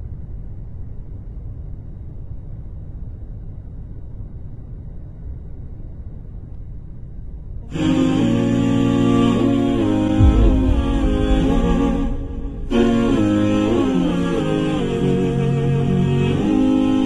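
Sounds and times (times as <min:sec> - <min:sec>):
low rumbling drone: 0:07.6 - 0:16.8
hummed vocal nasheed: 0:07.6 - 0:17.0.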